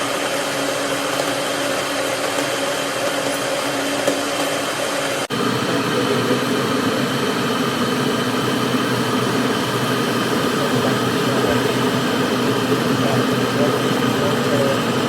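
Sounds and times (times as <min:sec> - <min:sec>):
kitchen appliance humming: 0:00.0 - 0:15.0.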